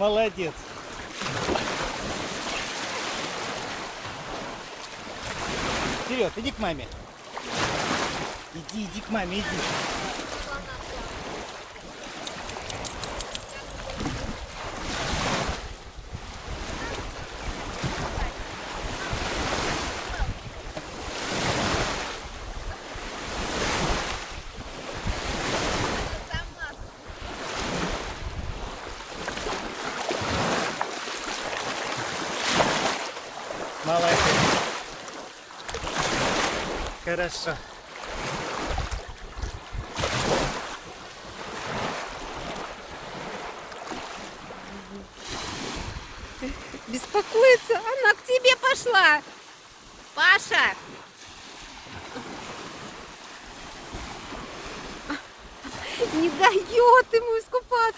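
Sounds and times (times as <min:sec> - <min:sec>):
waves washing on shore: 0:00.0 - 0:57.9
wind buffeting microphone: 0:09.0 - 0:30.5, 0:38.1 - 0:43.3, 0:45.2 - 0:48.0.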